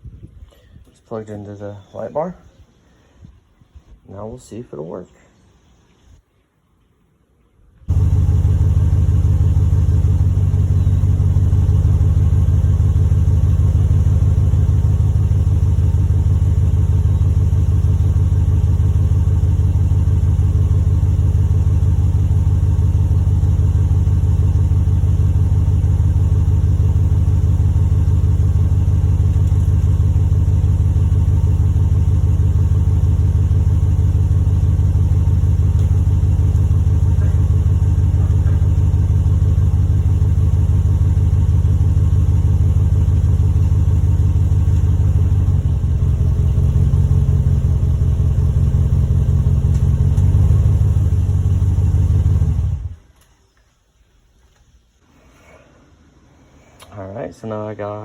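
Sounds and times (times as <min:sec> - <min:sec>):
pickup truck engine idling: 0:07.9 - 0:53.0.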